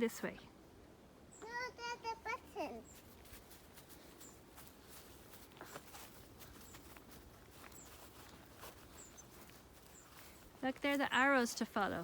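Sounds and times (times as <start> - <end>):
footsteps on outdoor path: 2.8 - 12.0.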